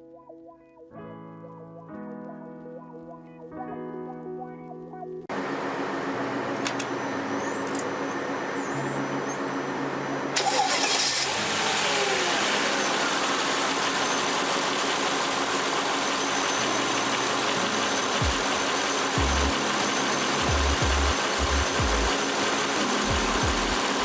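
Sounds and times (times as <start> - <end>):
car engine starting and idling: 5.3 - 24.0.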